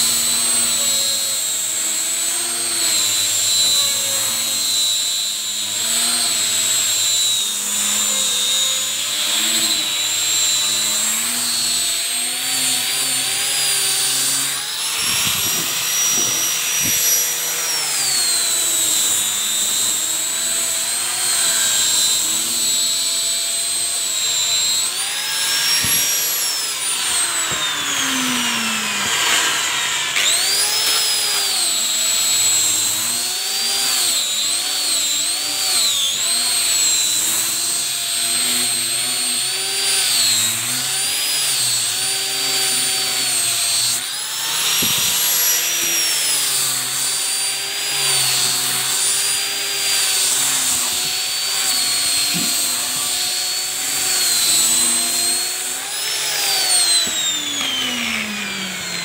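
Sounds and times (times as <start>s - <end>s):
grinder sanding wood: 0.0s - 59.0s.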